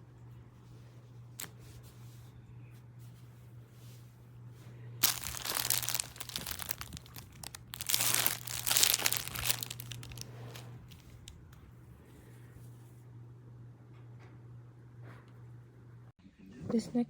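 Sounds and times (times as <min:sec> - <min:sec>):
pillow crinkling and rustling: 0:05.0 - 0:11.2.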